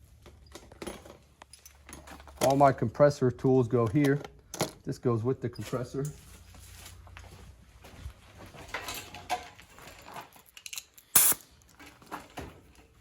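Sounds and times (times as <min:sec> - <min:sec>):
tools rustling clinking and knocking: 0:00.0 - 0:03.0, 0:03.6 - 0:13.0
loud burst of air noise: 0:11.2 - 0:11.4.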